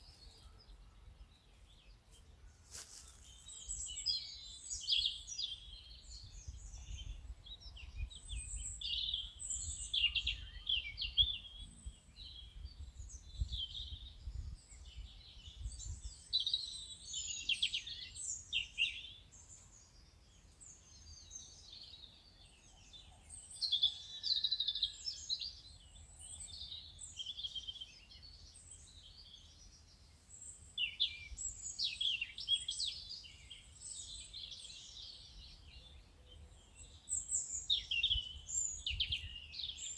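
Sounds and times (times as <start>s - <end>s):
birds chirping and trilling: 20.6s - 39.9s.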